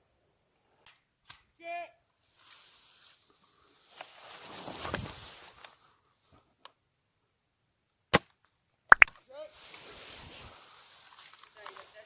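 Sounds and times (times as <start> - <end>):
rustling of movement: 2.2 - 6.5, 9.2 - 12.0.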